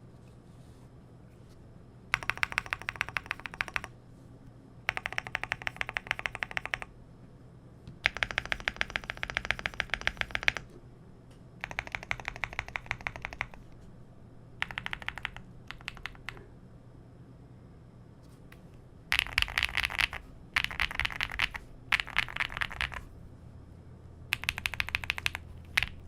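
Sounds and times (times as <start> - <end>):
mechanical keyboard typing: 2.1 - 3.9, 4.9 - 6.9, 8.0 - 10.7, 11.6 - 13.7, 14.6 - 16.4, 19.1 - 23.1, 24.3 - 26.0.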